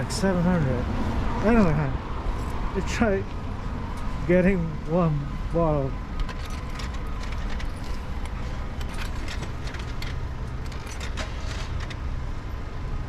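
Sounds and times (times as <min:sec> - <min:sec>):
low rumble of city traffic: 0:00.0 - 0:13.0
small clicks and clinks: 0:06.2 - 0:12.0.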